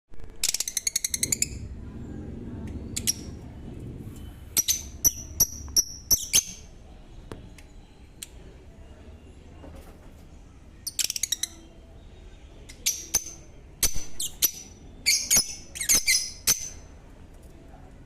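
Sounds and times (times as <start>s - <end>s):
low rumble: 0.9s - 7.4s
lovebirds chirping: 4.1s - 9.3s, 10.8s - 17.0s.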